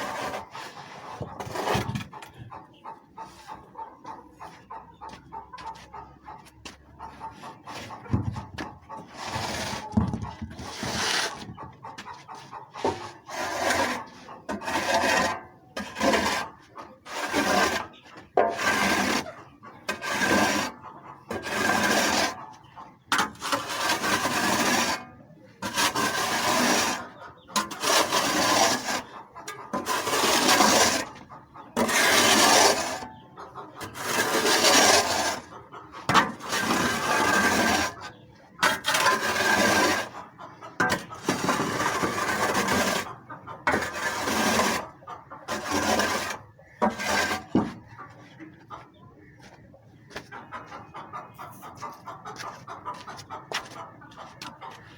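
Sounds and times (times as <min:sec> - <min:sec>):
rough scraping strokes: 0:00.0 - 0:02.4, 0:07.1 - 0:22.5, 0:23.1 - 0:31.2, 0:31.8 - 0:33.2, 0:33.8 - 0:48.4.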